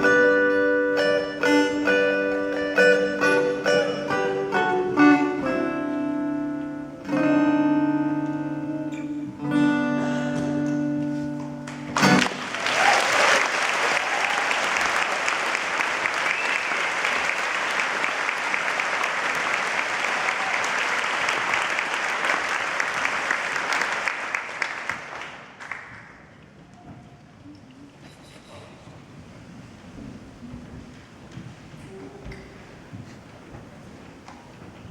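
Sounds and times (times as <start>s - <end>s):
acoustic guitar playing: 0.0s - 12.6s
audience applause: 11.7s - 26.3s.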